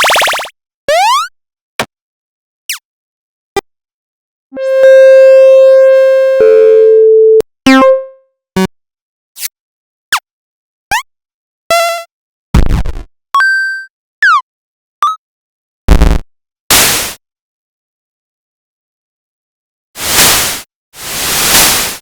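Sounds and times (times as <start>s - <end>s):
chiptune blips and zaps: 0.0s - 0.5s
long steady electronic beep: 6.4s - 8.2s
short noisy electronic burst: 16.7s - 17.2s, 20.0s - 22.0s.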